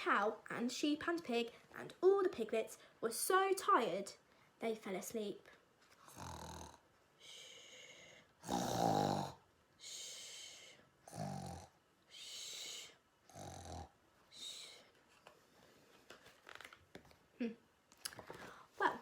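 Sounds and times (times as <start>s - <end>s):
person imitating snoring: 6.1s - 6.8s, 8.4s - 9.4s, 11.0s - 11.8s, 13.3s - 14.6s.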